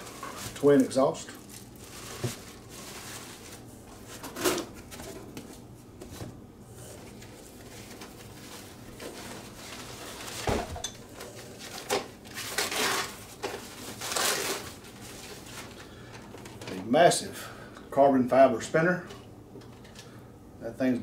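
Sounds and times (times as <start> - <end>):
packaging rustling: 0.0 - 5.6, 7.0 - 16.8.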